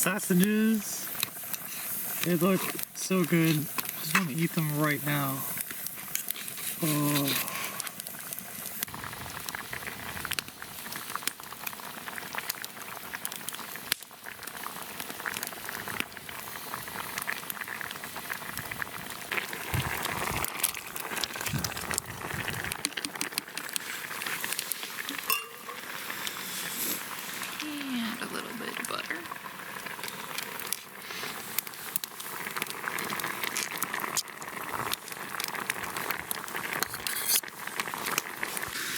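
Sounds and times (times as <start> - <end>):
campfire crackling: 0.0 - 38.9
pot of pasta bubbling: 0.0 - 38.9.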